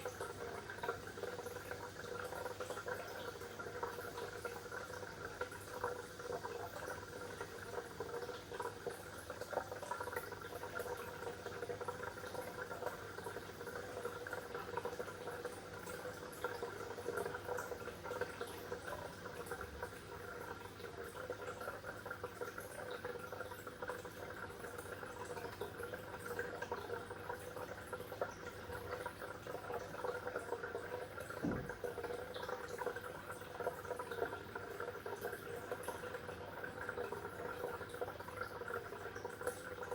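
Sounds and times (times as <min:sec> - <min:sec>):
water bubbling and trickling: 0:00.0 - 0:39.9
soft low knock: 0:31.4 - 0:31.8.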